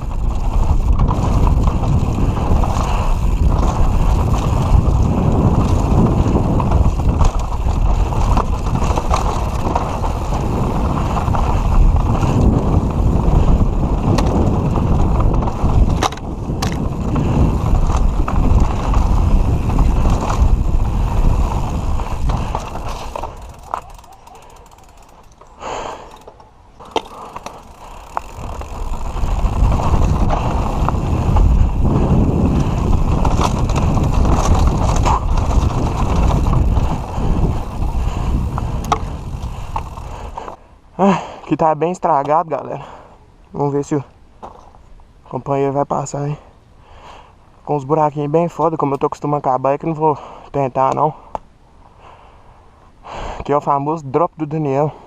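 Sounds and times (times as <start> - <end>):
tyre noise on dirt: 0.0 - 42.8
chain and frame clattering: 22.8 - 28.0.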